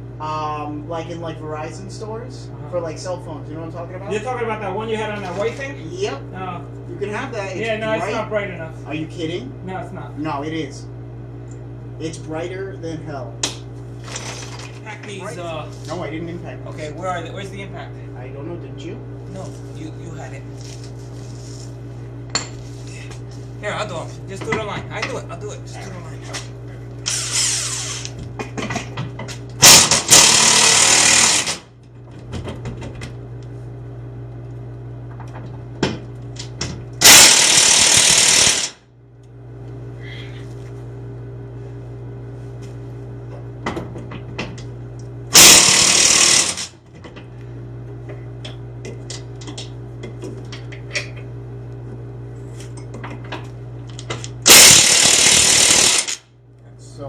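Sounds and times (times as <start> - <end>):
steady low hum: 0.0 - 57.0
impact wrench driving bolts: 29.6 - 31.7, 37.0 - 38.8, 45.3 - 46.8, 54.4 - 56.2.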